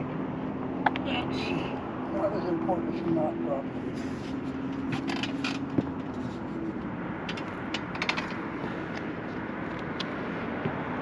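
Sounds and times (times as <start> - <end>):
small tools clicking and tapping: 7.3 - 9.1.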